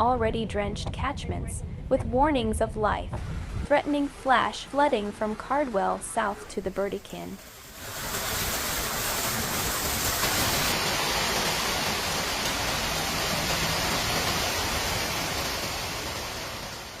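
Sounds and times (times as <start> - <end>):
rushing water: 3.4 - 17.0.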